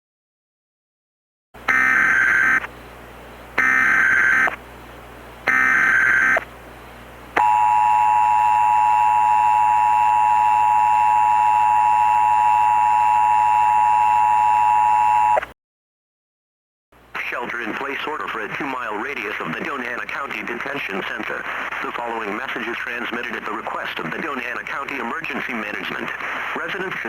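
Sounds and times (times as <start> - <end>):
modem-like data bursts: 1.7 - 2.7, 3.6 - 4.6, 5.5 - 6.5, 7.4 - 15.5, 17.2 - 27.0
two-tone attention signal: 3.6 - 4.5, 5.5 - 6.4, 7.4 - 15.4.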